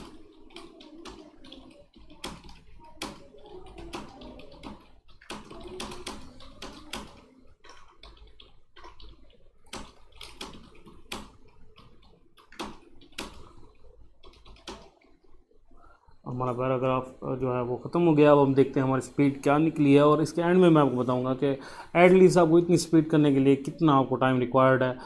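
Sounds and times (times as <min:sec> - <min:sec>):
fast keyboard typing: 0:00.0 - 0:15.5.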